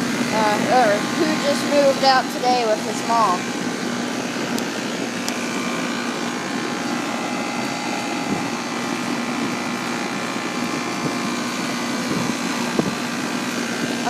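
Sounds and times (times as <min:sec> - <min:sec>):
air conditioner fan whoosh: 0:00.0 - 0:14.0
low hum of condenser unit: 0:00.0 - 0:14.0.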